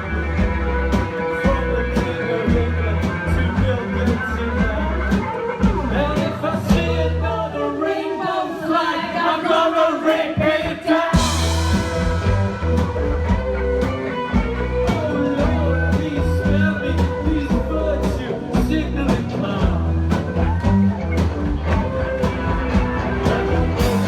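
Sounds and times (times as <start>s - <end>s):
rock music with singer: 0.0s - 24.0s
cymbal crash: 11.2s - 13.0s.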